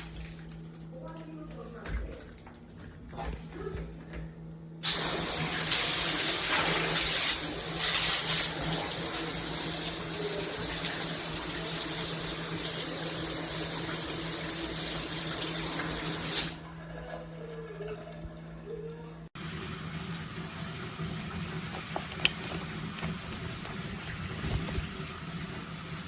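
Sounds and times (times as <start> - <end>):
water spraying from shower head: 4.8 - 16.6.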